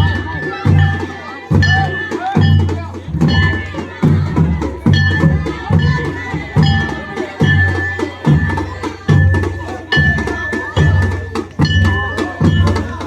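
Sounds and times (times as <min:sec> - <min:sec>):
deep drum beat: 0:00.0 - 0:13.0.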